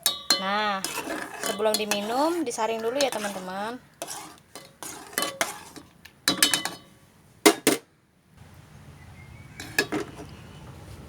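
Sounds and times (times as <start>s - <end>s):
metal utensils clinking on pot: 0.0s - 7.8s, 9.6s - 10.2s.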